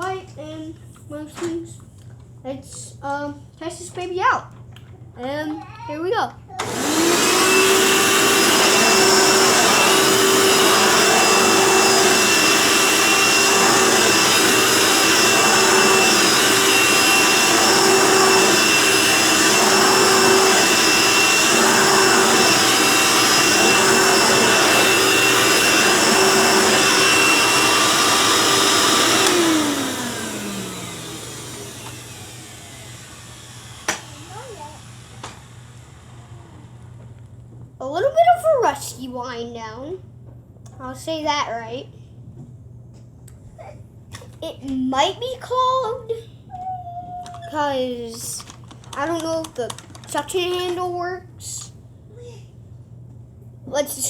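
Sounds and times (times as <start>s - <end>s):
vacuum cleaner motor whining: 6.6s - 37.4s, 46.6s - 50.8s.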